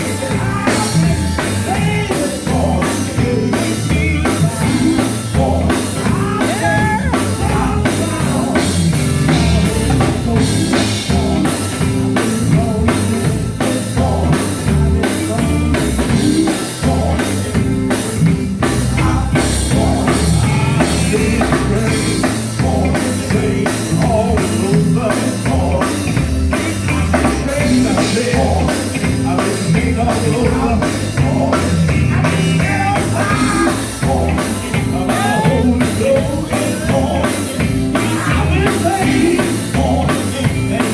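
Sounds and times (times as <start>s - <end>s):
bass and instruments: 0.0s - 40.9s
drum kit beat: 0.0s - 40.9s
person singing: 0.0s - 40.9s.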